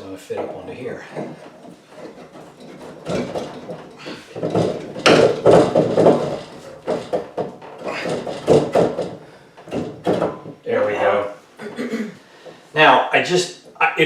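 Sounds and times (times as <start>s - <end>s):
pipe knocking and scraping: 0.0s - 11.4s.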